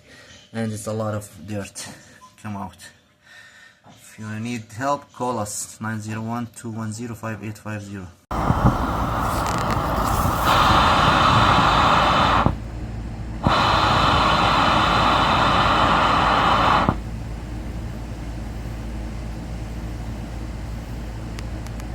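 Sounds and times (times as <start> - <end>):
loud rush of air: 8.3 - 18.0
low steady rumble: 8.3 - 21.9.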